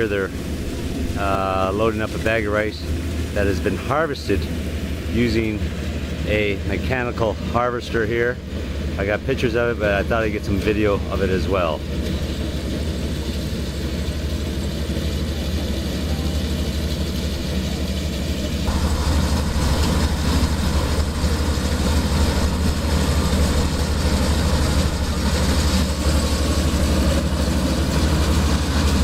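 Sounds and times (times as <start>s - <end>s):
harvester engine humming: 0.0s - 29.0s.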